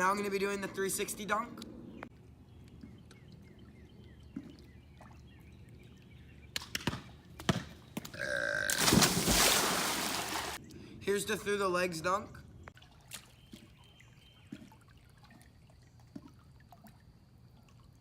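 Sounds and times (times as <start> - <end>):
man burping: 8.2 - 8.8
water splash into pool: 8.7 - 10.6.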